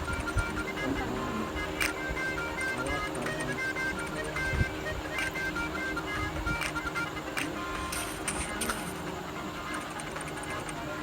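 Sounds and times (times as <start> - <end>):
background music: 0.0 - 11.0.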